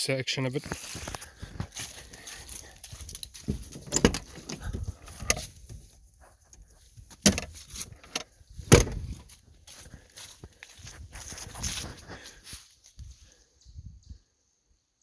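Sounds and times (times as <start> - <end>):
truck door clunks and knocks: 3.4 - 5.9, 7.1 - 9.3.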